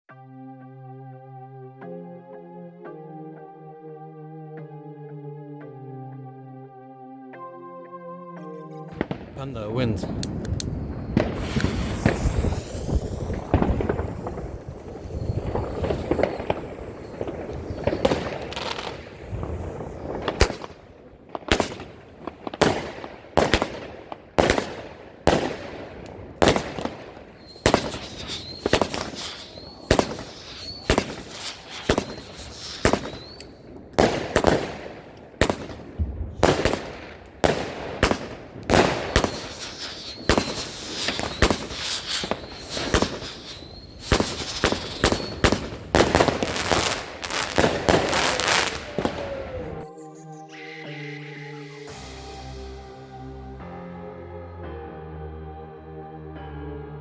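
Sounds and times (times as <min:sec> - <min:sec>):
fireworks launching and bursting: 0:08.9 - 0:49.9, 0:51.6 - 0:53.1.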